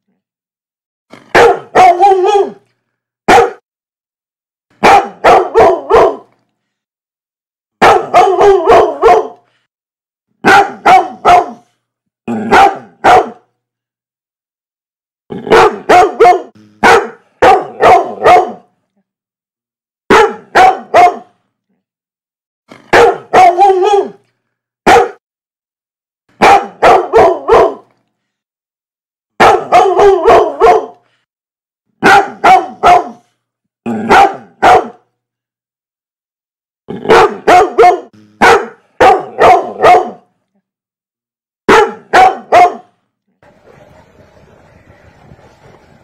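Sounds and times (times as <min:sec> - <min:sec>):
dog barking: 0:01.2 - 0:02.6, 0:03.3 - 0:03.6, 0:04.8 - 0:06.3, 0:07.8 - 0:09.4, 0:10.4 - 0:11.7, 0:12.4 - 0:13.5, 0:15.4 - 0:18.7, 0:20.1 - 0:21.4, 0:22.8 - 0:24.2, 0:24.8 - 0:25.2, 0:26.4 - 0:27.9, 0:29.4 - 0:31.0, 0:32.0 - 0:33.3, 0:34.0 - 0:35.1, 0:37.0 - 0:40.3, 0:41.7 - 0:43.0.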